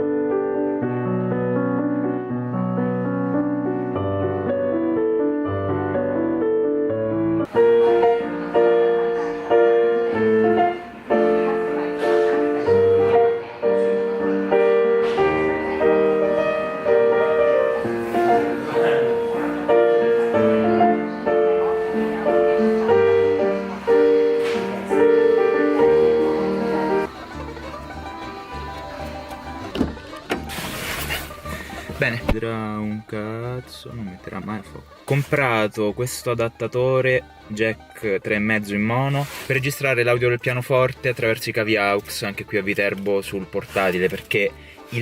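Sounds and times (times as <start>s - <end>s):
slow piano piece: 0.0s - 32.0s.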